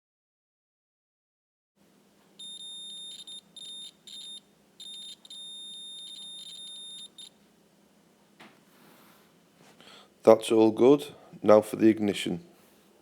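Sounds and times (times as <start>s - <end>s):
multimeter continuity beep: 2.4s - 7.4s.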